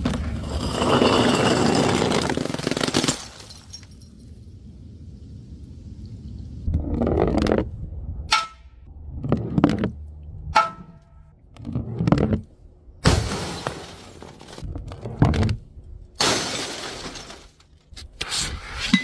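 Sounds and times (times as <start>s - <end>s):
glass bottles smashing: 0.4s - 4.3s, 13.0s - 14.6s, 16.2s - 17.7s.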